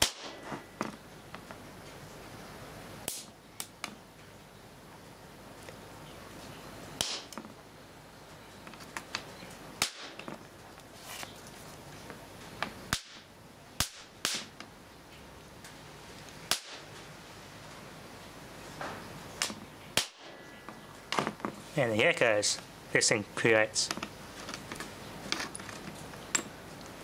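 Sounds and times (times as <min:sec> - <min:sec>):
sharp electrical sparking cracks: 0:00.0 - 0:00.4, 0:03.0 - 0:03.8, 0:07.0 - 0:07.4, 0:09.8 - 0:10.2, 0:12.9 - 0:14.6, 0:16.4 - 0:17.0, 0:19.4 - 0:20.4.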